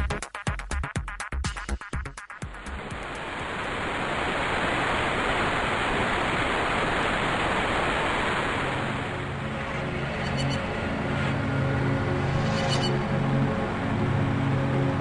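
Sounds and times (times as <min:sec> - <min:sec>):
low musical tones: 0:08.9 - 0:15.0.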